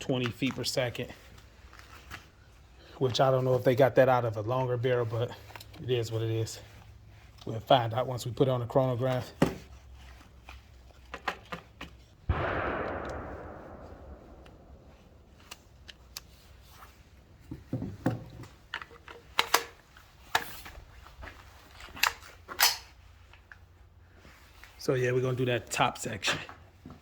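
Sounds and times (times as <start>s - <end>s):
rifle shot: 12.3s - 15.5s.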